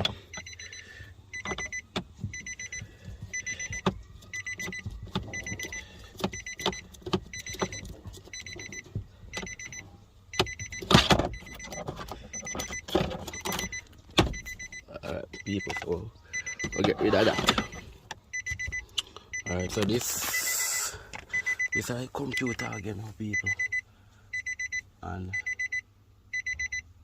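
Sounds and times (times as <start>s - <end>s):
car warning buzzer beeping: 0.0s - 27.0s.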